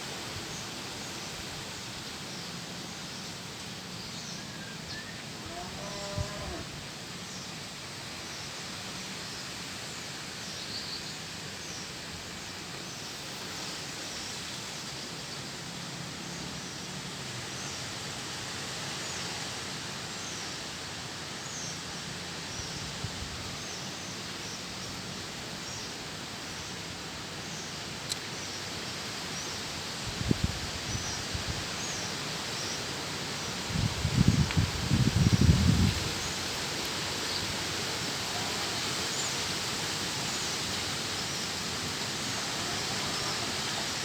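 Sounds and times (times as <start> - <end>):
strong wind rushing: 33.7 - 36.2.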